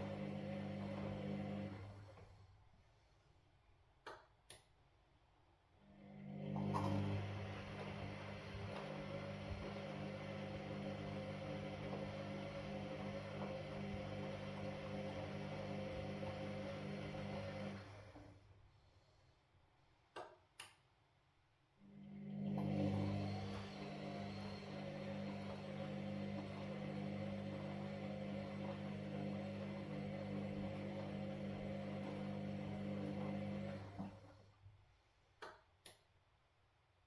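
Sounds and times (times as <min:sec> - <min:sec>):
washing machine drum motor humming: 0:06.4 - 0:18.2, 0:22.3 - 0:34.4.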